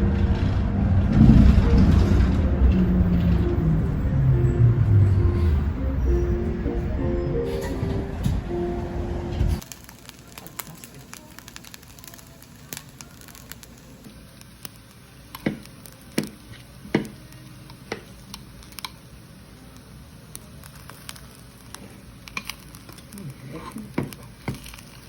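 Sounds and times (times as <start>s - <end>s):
food sizzling in a frying pan: 9.6s - 25.0s.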